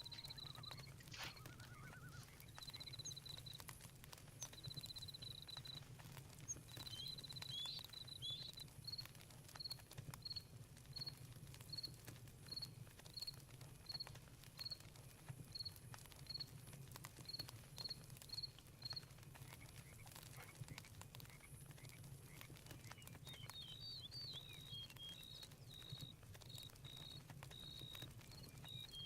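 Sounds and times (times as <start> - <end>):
short whistled glides: 0.0 - 2.4
campfire crackling: 0.0 - 29.0.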